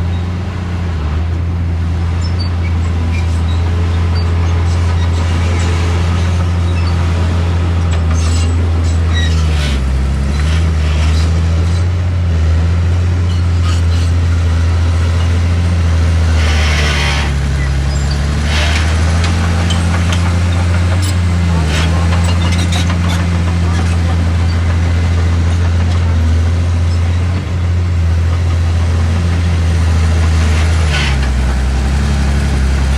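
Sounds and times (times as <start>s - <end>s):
heavy diesel engine running: 0.0s - 32.9s
clanks and rattles: 18.4s - 26.2s.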